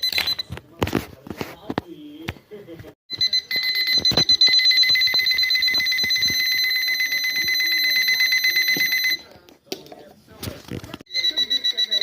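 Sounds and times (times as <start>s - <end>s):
alarm clock buzzer: 3.1s - 9.2s.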